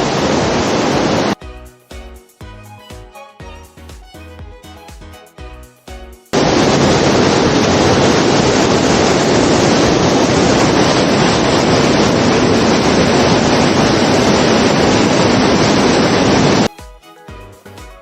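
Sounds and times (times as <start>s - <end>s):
waterfall rushing: 0.0s - 1.4s, 6.4s - 16.7s.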